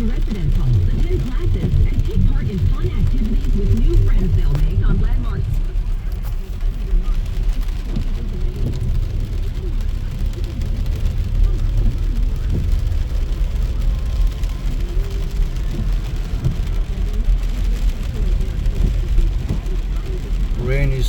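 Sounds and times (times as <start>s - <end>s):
rain hitting car: 0.0s - 21.0s
road and engine rumble: 0.0s - 21.0s.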